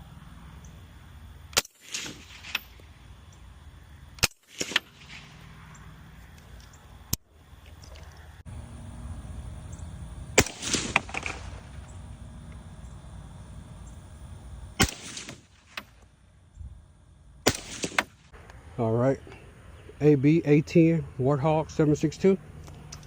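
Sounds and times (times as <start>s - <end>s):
suppressed rifle shots: 1.6s - 2.7s, 4.2s - 5.3s, 10.4s - 11.9s, 14.8s - 16.0s, 17.4s - 18.3s.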